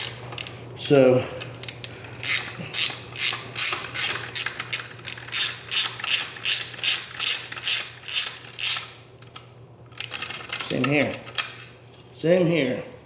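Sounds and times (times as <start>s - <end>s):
ratchet wrench clicking: 0.0s - 8.9s.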